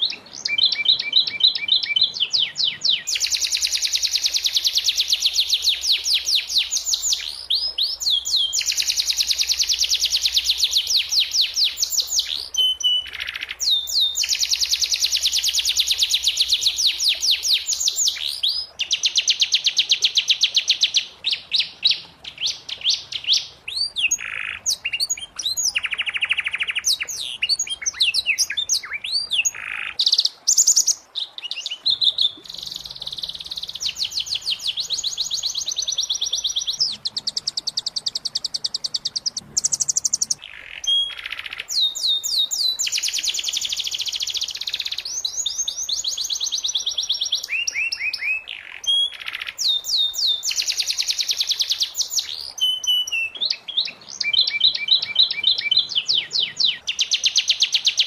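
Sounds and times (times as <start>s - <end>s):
canary singing: 0.0s - 58.0s.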